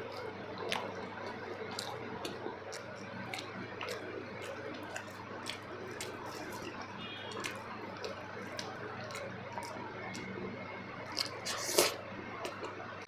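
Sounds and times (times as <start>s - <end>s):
wet chewing and mouth smacks: 0.0s - 10.4s, 11.0s - 12.8s
low steady hum: 0.0s - 13.0s.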